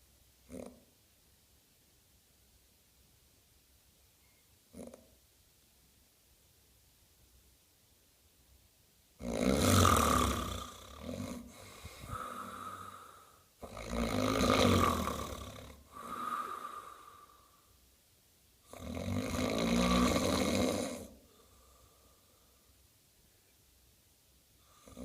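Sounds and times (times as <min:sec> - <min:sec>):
loud snoring: 0:00.5 - 0:00.8, 0:04.7 - 0:05.0, 0:09.2 - 0:17.4, 0:18.7 - 0:21.2, 0:24.7 - 0:25.0.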